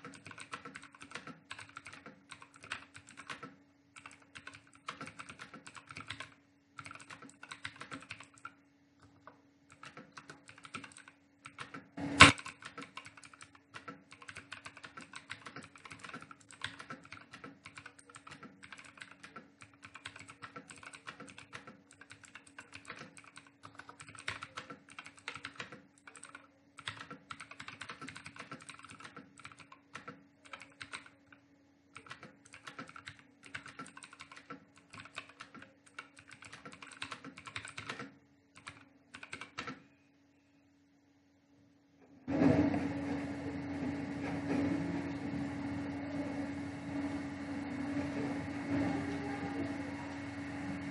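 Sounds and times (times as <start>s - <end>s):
fast keyboard typing: 0.0s - 39.8s
steady low hum: 42.0s - 50.9s.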